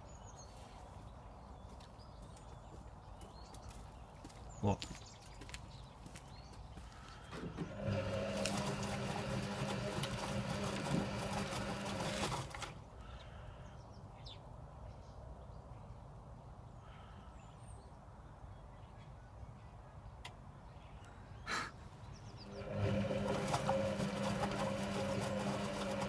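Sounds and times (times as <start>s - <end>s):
washing machine drum motor humming: 7.5s - 12.7s, 22.4s - 26.0s.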